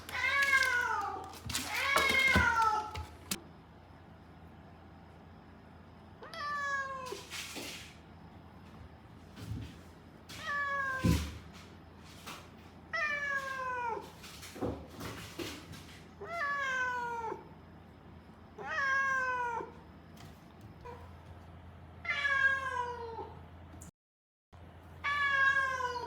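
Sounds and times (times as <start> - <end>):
cat meowing: 18.6 - 19.8, 22.1 - 23.4, 25.0 - 26.0.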